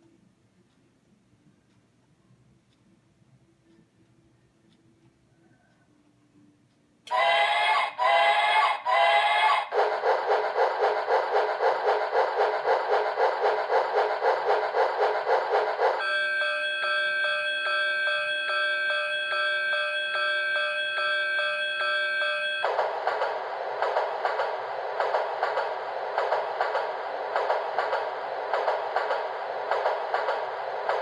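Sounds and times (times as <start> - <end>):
electronic train chugging: 7.1 - 31.0
ringing bell tone: 16.0 - 22.7.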